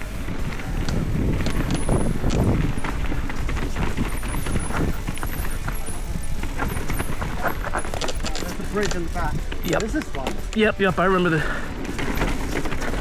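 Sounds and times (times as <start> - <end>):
wind rumble on microphone: 0.0 - 10.3
bike knocks and rattles: 0.0 - 13.0
tyres crunching over rocks: 0.0 - 13.0.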